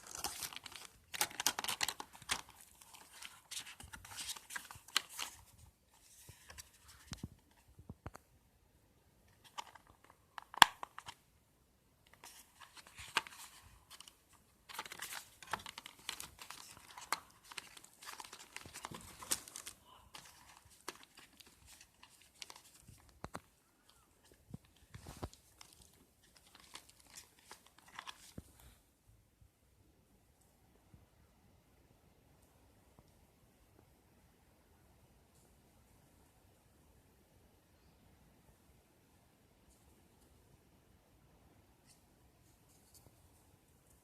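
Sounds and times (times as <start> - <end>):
packaging crinkling and rustling: 0.0 - 7.6, 9.4 - 11.2, 12.1 - 28.6.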